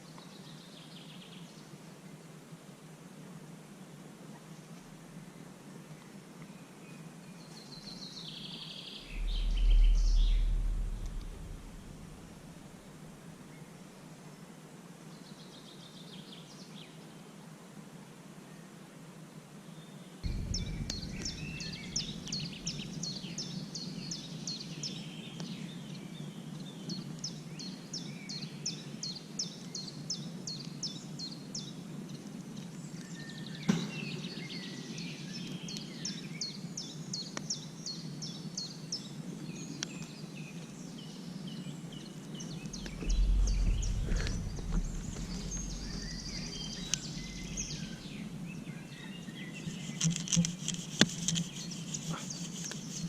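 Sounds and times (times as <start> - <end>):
low background noise: 0.0 - 53.0
songbird chirping: 6.6 - 13.7, 20.2 - 28.8, 39.5 - 53.0
low rumble: 9.0 - 13.5, 20.2 - 24.4, 42.5 - 49.0
sharp knock: 20.3 - 23.3, 42.8 - 48.0.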